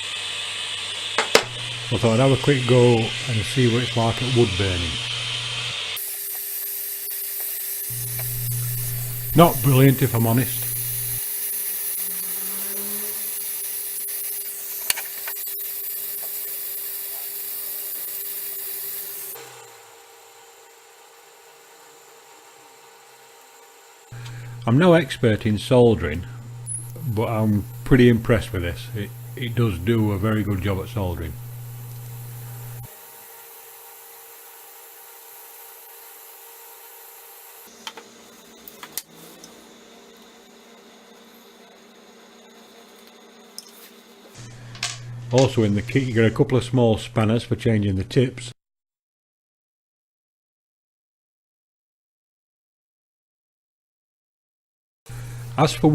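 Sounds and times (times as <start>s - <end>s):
gas soldering iron hissing: 0.0s - 19.5s, 24.1s - 46.3s, 55.1s - 55.9s.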